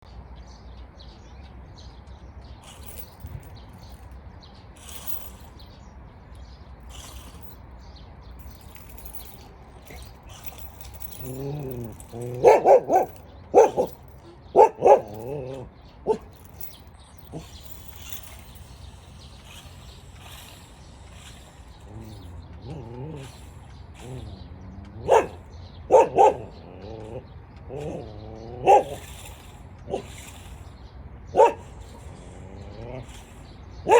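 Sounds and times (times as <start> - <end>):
dog whining: 8.5 - 18.7, 19.3 - 30.7, 31.3 - 33.9
dog barking loudly: 11.2 - 16.4, 24.0 - 29.1, 29.9 - 30.3, 31.3 - 31.9.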